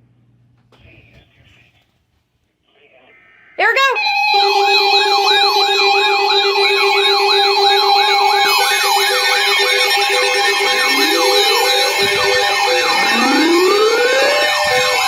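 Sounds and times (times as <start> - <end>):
warbling alarm tone: 3.6 - 15.0
steady tone: 10.2 - 15.0
beeping tone: 10.5 - 15.0.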